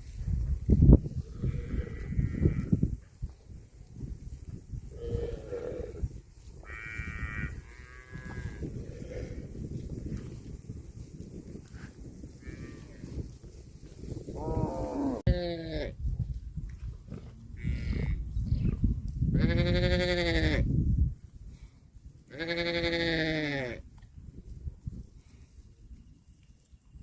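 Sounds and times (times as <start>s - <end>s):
young animal bleating: 6.6s - 9.4s, 14.5s - 16.0s, 17.6s - 18.2s, 19.4s - 20.7s, 22.3s - 23.8s.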